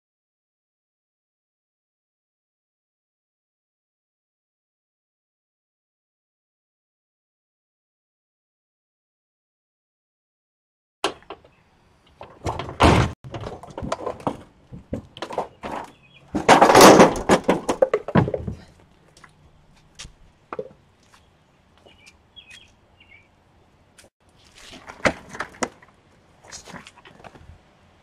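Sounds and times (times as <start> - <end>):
clattering: 12.2 - 18.7
metal and plastic thunks: 12.2 - 18.7.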